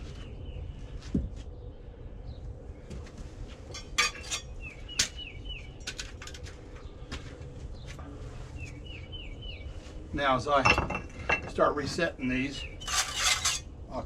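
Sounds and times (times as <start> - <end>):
concrete pavers clinking: 3.7 - 5.2, 10.5 - 13.7.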